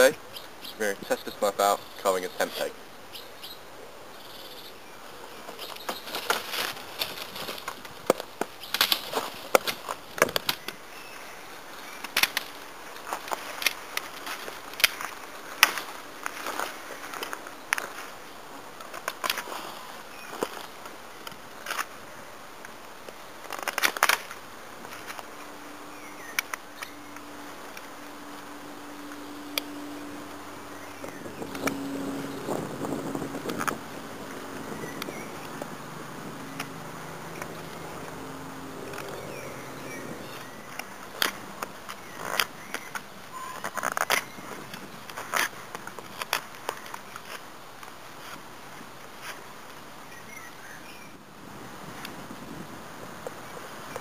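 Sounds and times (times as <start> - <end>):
faint steady hum: 9.9 - 54.0.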